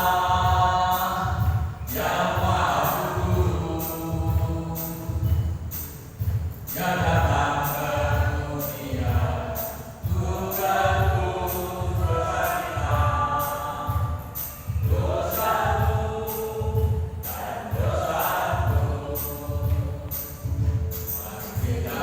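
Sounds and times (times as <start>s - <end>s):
choir singing: 0.0s - 5.8s, 6.7s - 22.0s
low beat: 0.0s - 22.0s.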